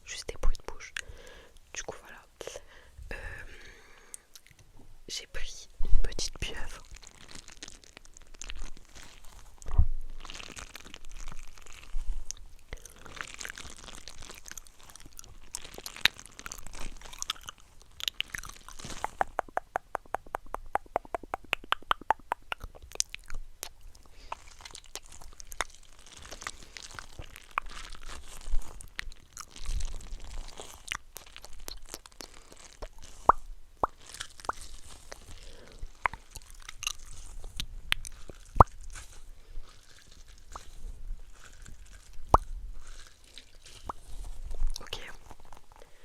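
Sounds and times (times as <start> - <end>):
wet mouth clicks and smacks: 4.1 - 4.7, 8.2 - 45.8.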